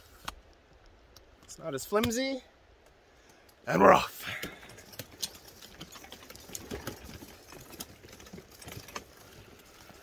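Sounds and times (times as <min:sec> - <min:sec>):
gear rattling and clicking: 0:04.2 - 0:10.0
footsteps on trail: 0:04.3 - 0:10.0.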